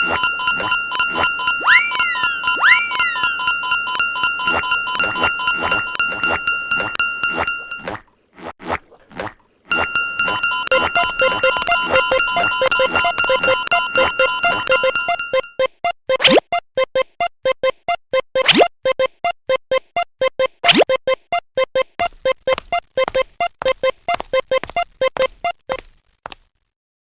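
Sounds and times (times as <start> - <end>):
steady high tone: 0.0 - 7.8, 9.7 - 15.7
repeating synth beeps: 0.0 - 7.9, 9.7 - 25.8.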